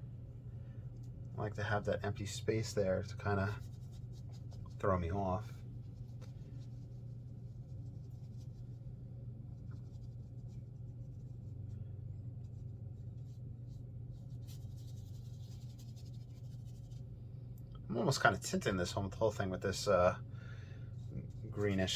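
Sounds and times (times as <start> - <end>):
low hum: 0.0 - 18.0
brush scratching on paper: 2.6 - 8.9, 9.5 - 17.1, 21.0 - 21.9.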